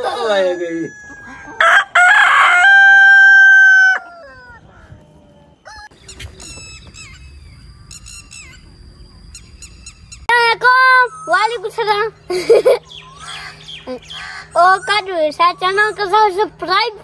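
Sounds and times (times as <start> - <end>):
rooster crowing: 0.0 - 5.9
small birds chirping: 4.4 - 17.0.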